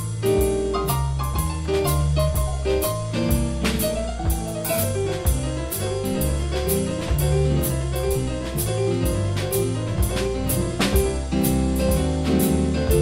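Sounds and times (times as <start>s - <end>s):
bass line: 0.0s - 13.0s
drum kit and cymbals: 0.0s - 13.0s
piano chords: 0.0s - 13.0s.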